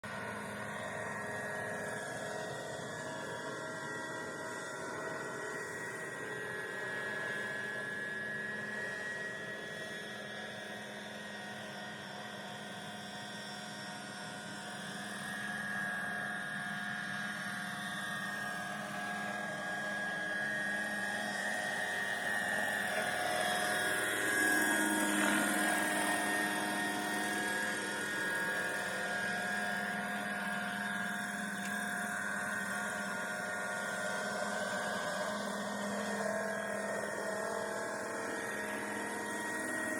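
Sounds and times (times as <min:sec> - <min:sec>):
model helicopter engine whine: 0:00.0 - 0:39.9.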